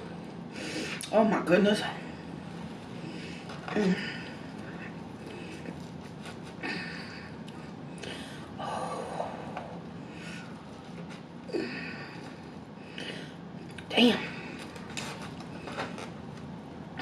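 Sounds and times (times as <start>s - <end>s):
person humming: 8.6s - 9.8s.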